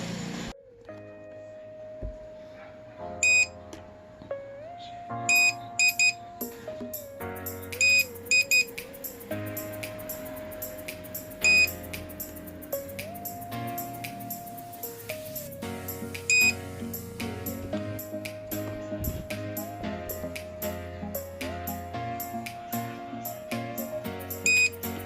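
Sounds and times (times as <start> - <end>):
upbeat background music: 2.0 - 25.0
high beeping notes: 3.2 - 3.6, 5.3 - 6.2, 7.4 - 20.4, 24.4 - 24.8
held synth tone: 7.8 - 12.6, 13.8 - 17.6.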